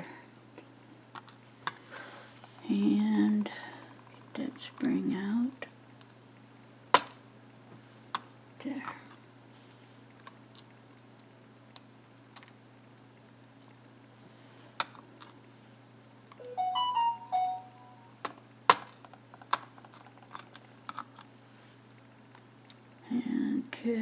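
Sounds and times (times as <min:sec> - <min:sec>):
pitched notes stepping up and down: 0:16.4 - 0:18.2.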